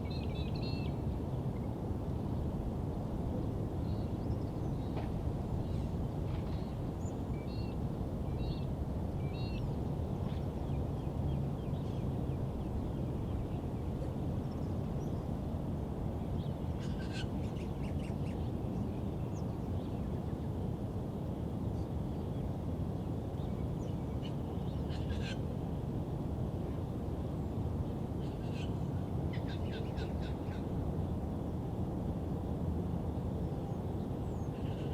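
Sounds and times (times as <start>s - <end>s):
low city rumble: 0.0s - 34.9s
bird calls: 16.8s - 18.4s, 24.2s - 25.4s, 28.2s - 30.7s.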